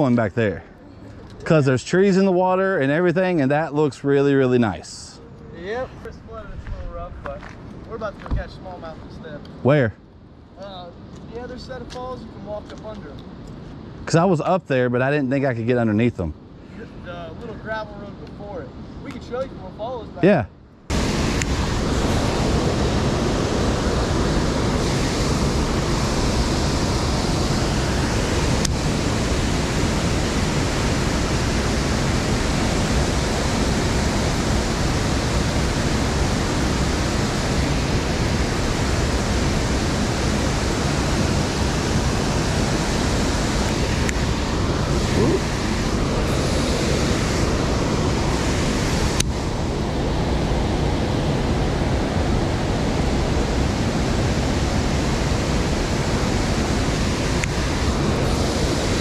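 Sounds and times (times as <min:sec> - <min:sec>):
waterfall rushing: 0:20.9 - 0:59.0.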